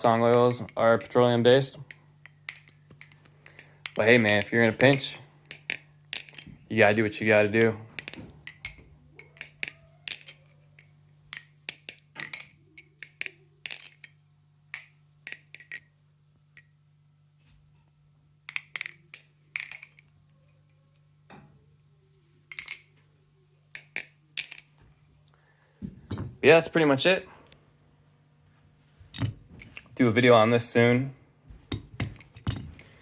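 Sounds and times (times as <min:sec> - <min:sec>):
faint low hum: 0:00.0 - 0:33.0.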